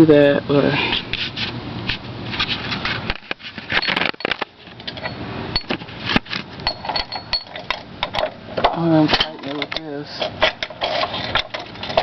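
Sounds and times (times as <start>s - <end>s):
hand tools clicking and clinking: 2.7s - 12.0s.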